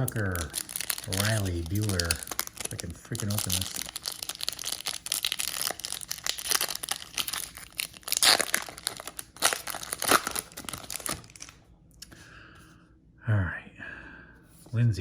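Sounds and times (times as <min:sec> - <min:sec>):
wrapper tearing and crinkling: 0:00.0 - 0:11.6.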